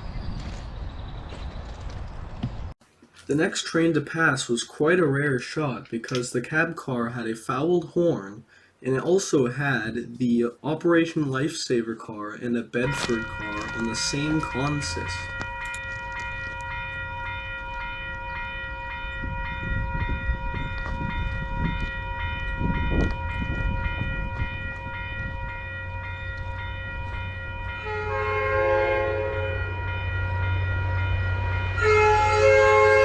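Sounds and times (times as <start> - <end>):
train horn broken notes: 12.8 - 17.2, 26.5 - 33.0
crossing bell ringing: 12.8 - 33.0
train rumble: 12.8 - 33.0.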